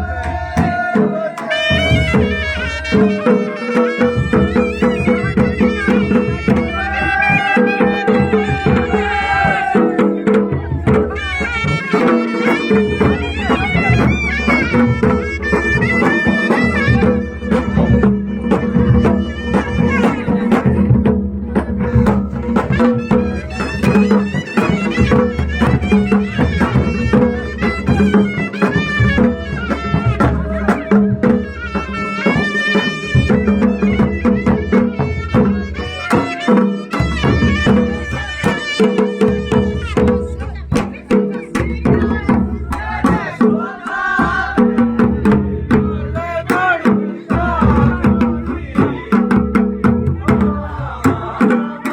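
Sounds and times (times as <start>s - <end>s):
steady drum beats: 0.0s - 51.9s
reedy wind instrument melody: 1.3s - 10.0s, 11.1s - 20.9s, 22.3s - 40.8s.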